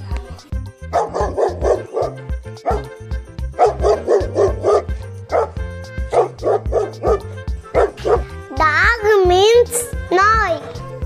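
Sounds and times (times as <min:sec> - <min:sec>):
background music: 0:00.0 - 0:11.0
dog barking: 0:00.9 - 0:03.0, 0:03.6 - 0:08.3.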